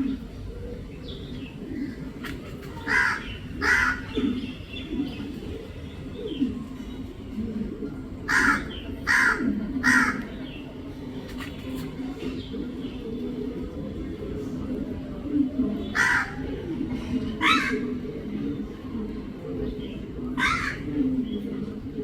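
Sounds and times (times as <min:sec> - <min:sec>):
crow cawing: 0:02.8 - 0:04.2, 0:08.3 - 0:10.3, 0:16.0 - 0:16.4, 0:17.4 - 0:17.9, 0:20.4 - 0:20.9.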